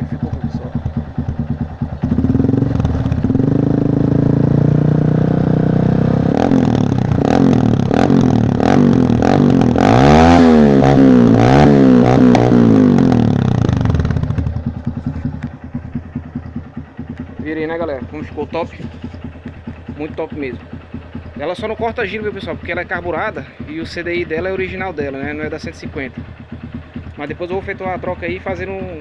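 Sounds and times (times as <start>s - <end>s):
exhaust cracks: 0.0s - 5.6s, 6.2s - 29.0s
motorcycle engine revving hard: 0.0s - 19.2s.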